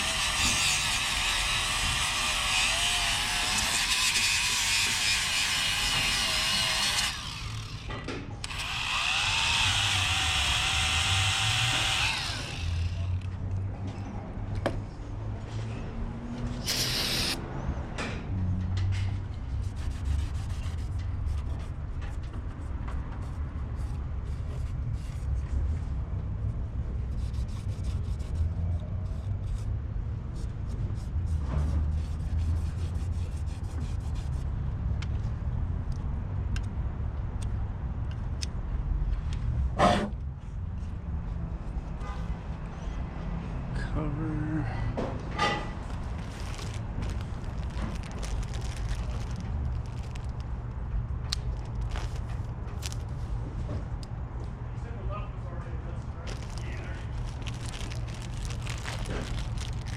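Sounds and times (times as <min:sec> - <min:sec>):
power tool whining: 0:00.0 - 0:13.3, 0:16.6 - 0:17.4.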